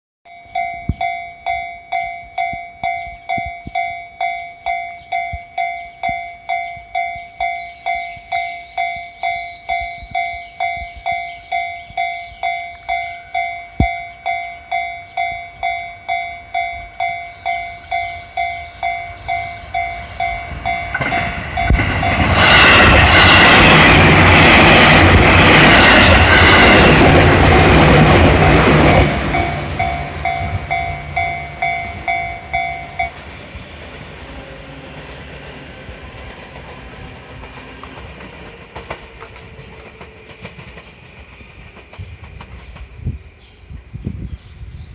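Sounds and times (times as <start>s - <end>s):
level crossing warning bell: 0.3s - 23.6s, 24.7s - 33.7s
electric train passing: 0.3s - 43.9s
wheels clacking over rail joints: 17.0s - 43.1s.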